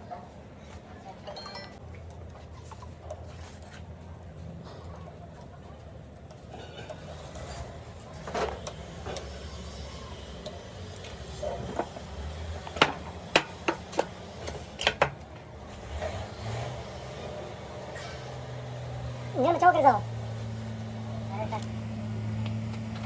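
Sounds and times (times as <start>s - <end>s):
knocks and clicks on an engine: 11.7s - 15.6s.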